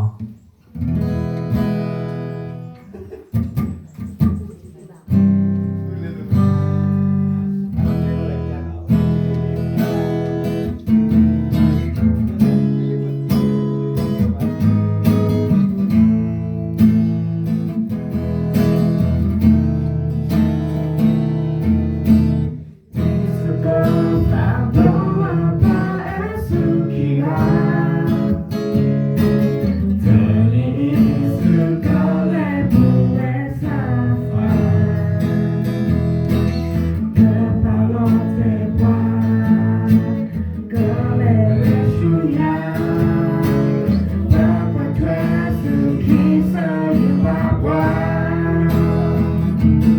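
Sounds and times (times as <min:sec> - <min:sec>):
acoustic guitar strumming: 0:00.0 - 0:49.9
person singing: 0:23.2 - 0:28.6, 0:30.0 - 0:35.7, 0:37.1 - 0:49.5.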